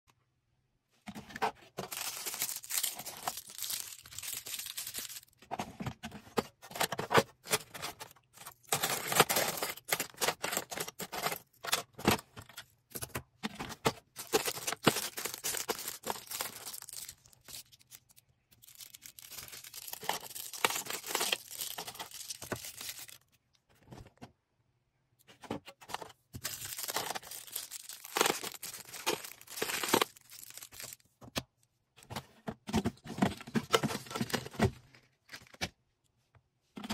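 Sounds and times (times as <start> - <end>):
packaging crinkling and tearing: 1.8 - 5.4, 6.7 - 12.2, 13.9 - 23.3, 26.4 - 31.0.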